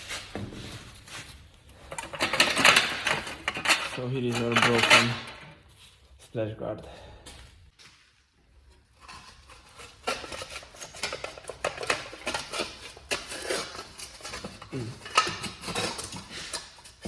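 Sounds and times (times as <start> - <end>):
sheet metal rattling and clinking: 1.9 - 5.4.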